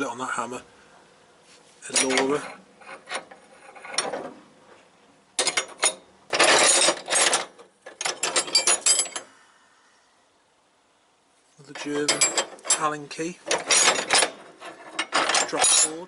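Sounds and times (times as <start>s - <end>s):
metal tools clinking: 1.9s - 4.2s, 5.4s - 9.3s, 11.7s - 16.0s.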